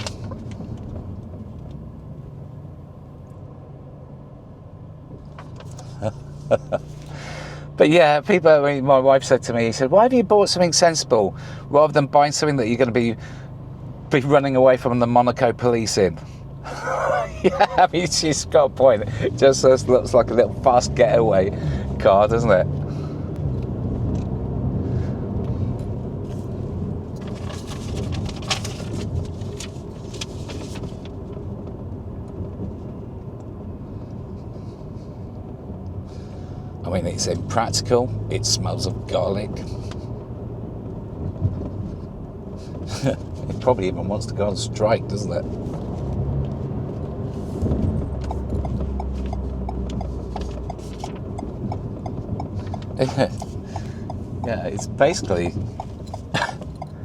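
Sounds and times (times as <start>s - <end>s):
tyre and road noise: 0.0s - 3.2s, 4.7s - 8.6s, 12.4s - 57.0s
car engine running: 0.0s - 57.0s
turn signal ticking: 16.4s - 44.7s, 45.4s - 57.0s.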